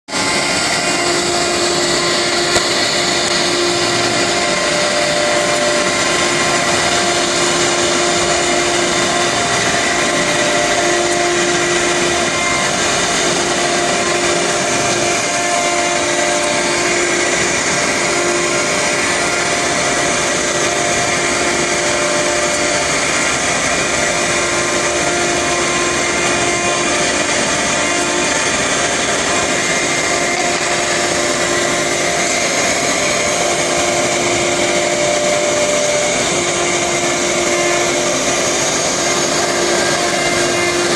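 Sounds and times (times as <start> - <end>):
cnc router spindle whine: 0.0 - 40.9
machining noise: 0.1 - 40.9.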